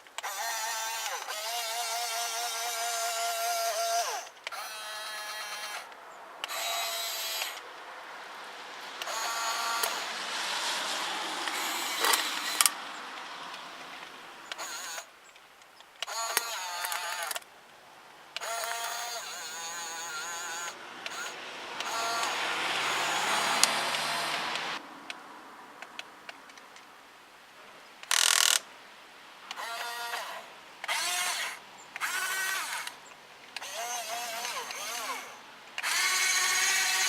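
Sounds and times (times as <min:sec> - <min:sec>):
small electric motors whining: 0:00.2 - 0:07.6, 0:09.0 - 0:12.8, 0:13.9 - 0:15.1, 0:16.0 - 0:17.4, 0:18.4 - 0:24.8, 0:29.5 - 0:33.0, 0:33.6 - 0:37.0
sharp clicks: 0:28.0 - 0:28.6.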